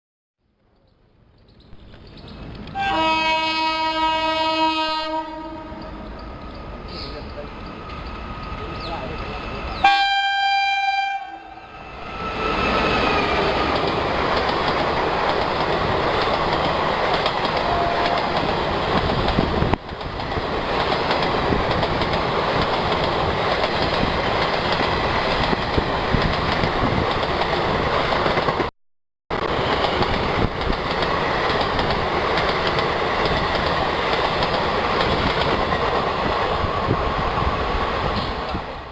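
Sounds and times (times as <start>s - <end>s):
train wheels rumbling on rail: 1.7s - 28.7s, 29.3s - 38.9s
train horn: 2.8s - 6.1s, 9.8s - 11.6s, 17.6s - 18.4s.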